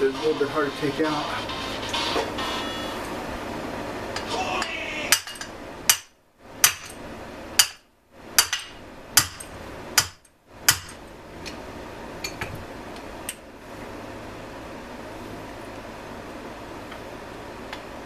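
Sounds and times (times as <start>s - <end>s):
hammer striking metal: 4.2s - 7.0s, 7.6s - 7.8s, 8.4s - 11.0s.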